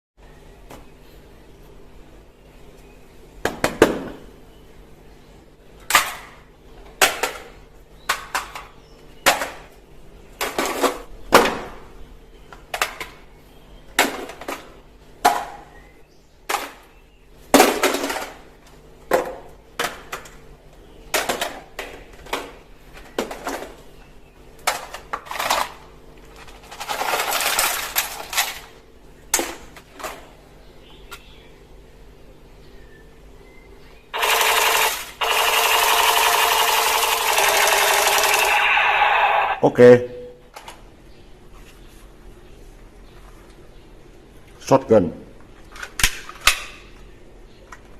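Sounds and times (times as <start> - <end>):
plastic toy guns clacking: 34.2 - 38.8.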